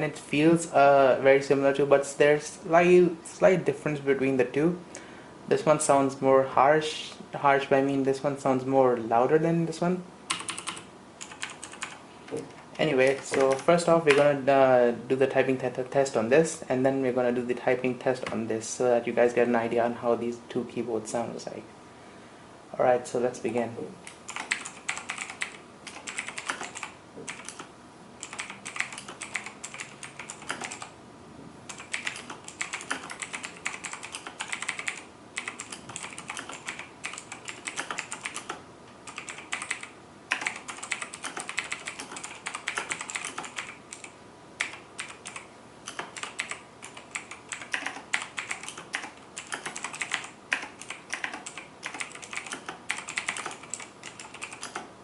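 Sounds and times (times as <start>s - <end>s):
mechanical keyboard typing: 10.3s - 14.3s, 24.0s - 30.9s, 31.7s - 54.9s.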